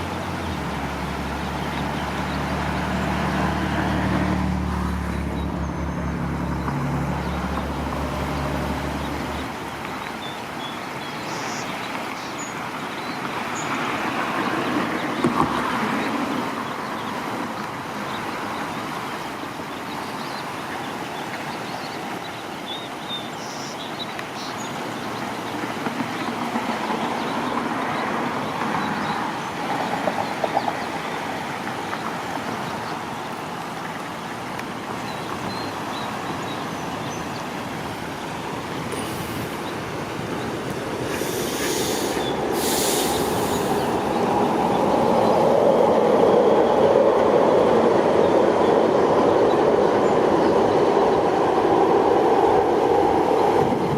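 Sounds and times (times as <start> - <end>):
train running: 38.6 - 53.9.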